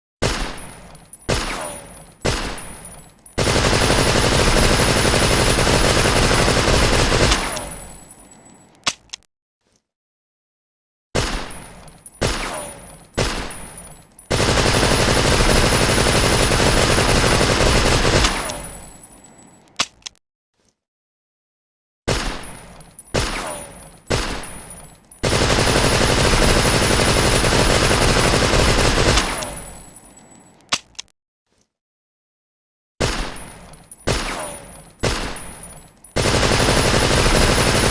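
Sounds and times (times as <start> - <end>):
automatic gunfire burst: 3.4 - 7.6, 14.3 - 18.4, 25.2 - 29.6, 36.2 - 37.9.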